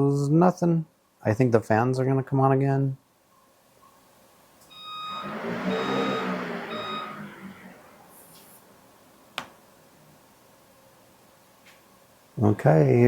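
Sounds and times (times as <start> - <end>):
electronic beeps: 4.7 - 8.5
radiator fans rushing air: 4.7 - 10.8.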